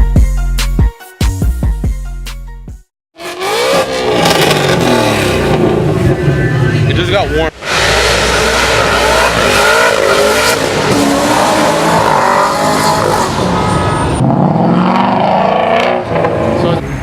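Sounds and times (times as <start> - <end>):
car engine revving: 3.2 - 16.9
tire and exhaust noise: 3.4 - 17.0.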